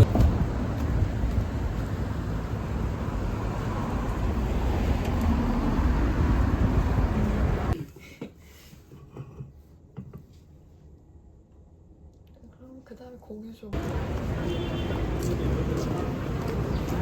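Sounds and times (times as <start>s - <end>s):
rumbling traffic noise: 0.0s - 7.8s, 13.8s - 17.0s.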